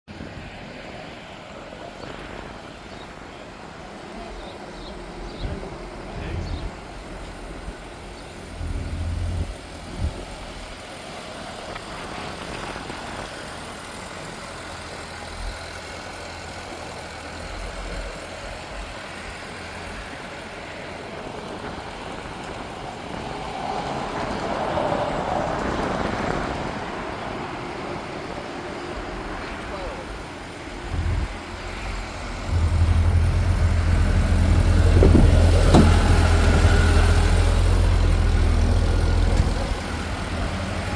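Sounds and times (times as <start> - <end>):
vehicle engine running: 1.9 - 26.0, 27.1 - 40.9
low thumps: 30.9 - 40.8.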